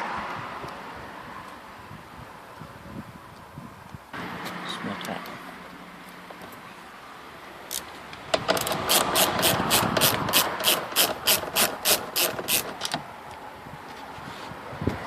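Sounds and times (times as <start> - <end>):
ratchet wrench clicking: 7.7 - 13.0.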